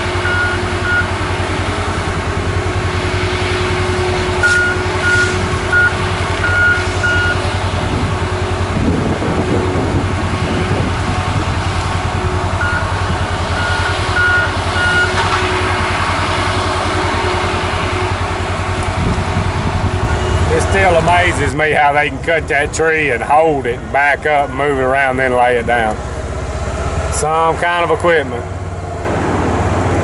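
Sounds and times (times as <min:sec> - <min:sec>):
diesel engine running: 0:00.0 - 0:30.0
reversing alarm beeps: 0:00.2 - 0:01.2, 0:04.4 - 0:07.5, 0:12.6 - 0:13.0, 0:13.6 - 0:15.2, 0:20.0 - 0:21.0.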